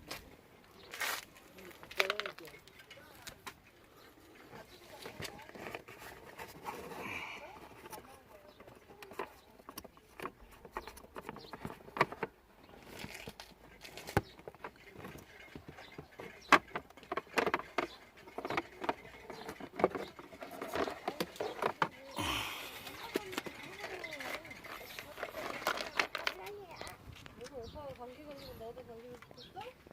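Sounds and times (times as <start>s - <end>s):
plastic parts clicking and tapping: 1.6s - 3.7s, 7.6s - 28.1s.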